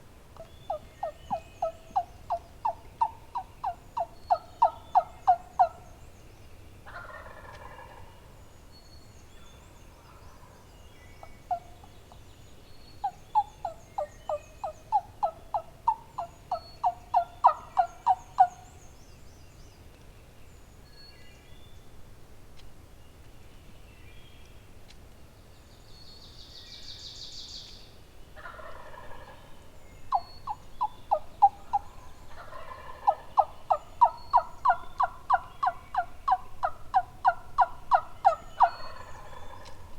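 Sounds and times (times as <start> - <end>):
faint songbirds chirping: 0.0 - 39.9
hen turkey yelping: 0.4 - 5.8, 6.9 - 8.1, 13.0 - 18.6, 28.4 - 29.5, 30.1 - 39.8
turkey gobbling: 0.4 - 5.8, 6.9 - 8.2, 13.0 - 18.6, 28.4 - 39.9.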